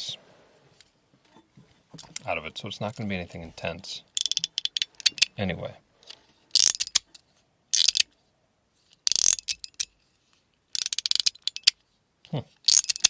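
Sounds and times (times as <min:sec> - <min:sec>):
fidget slider clicking: 0:04.2 - 0:05.3, 0:06.0 - 0:07.1, 0:07.8 - 0:08.1, 0:09.0 - 0:09.9, 0:10.8 - 0:11.8, 0:12.6 - 0:13.0.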